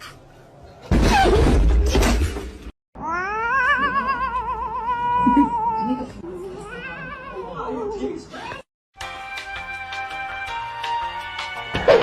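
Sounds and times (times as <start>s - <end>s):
cat yowling: 3.0s - 7.6s.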